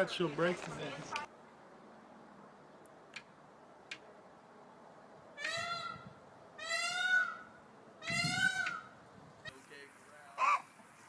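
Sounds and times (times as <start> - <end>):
bird nasal calls: 5.4 - 9.0.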